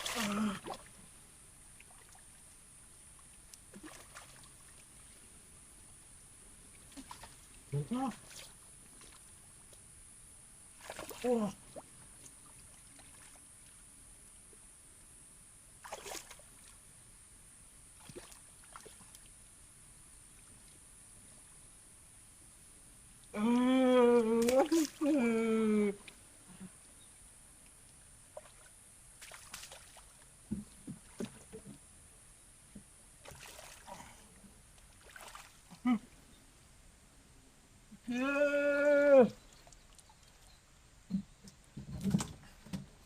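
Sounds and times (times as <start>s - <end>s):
water splashing and sloshing: 0.0s - 10.0s, 10.7s - 14.6s, 15.8s - 16.9s, 17.9s - 19.5s, 24.2s - 25.3s, 27.6s - 32.0s, 32.6s - 36.2s, 39.2s - 43.0s.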